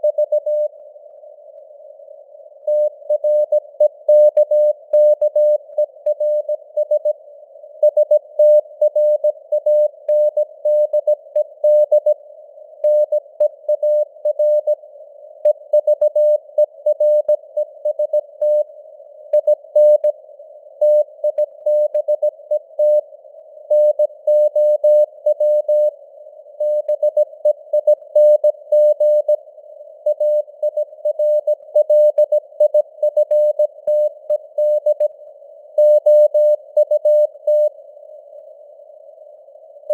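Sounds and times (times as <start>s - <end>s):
morse code beeps: 2.7s - 7.1s, 30.1s - 35.1s.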